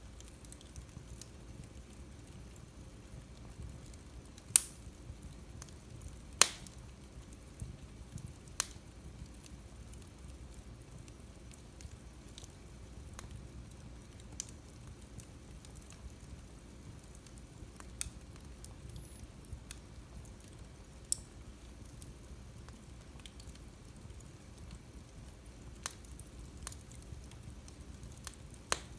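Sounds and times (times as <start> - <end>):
wood fire crackling: 0.0 - 28.9
sharp pops from fire: 3.4 - 6.8, 7.6 - 16.2, 17.0 - 19.0, 19.6 - 22.1, 24.5 - 28.9.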